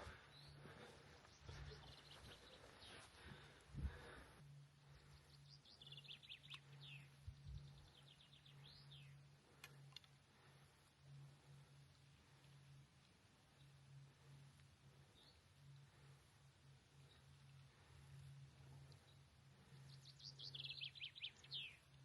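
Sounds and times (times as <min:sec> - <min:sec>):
faint songbird trills: 0:00.0 - 0:03.5, 0:04.8 - 0:12.8, 0:13.4 - 0:22.0
low hum: 0:00.0 - 0:22.0.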